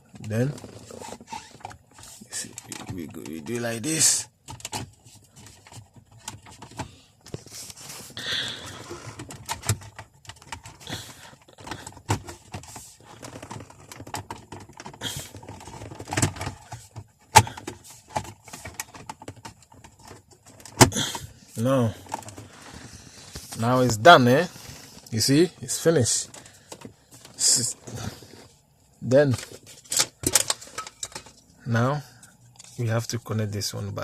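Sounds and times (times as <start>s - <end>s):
plastic trim clicking and rustling: 11.4s - 21.0s, 29.3s - 31.4s.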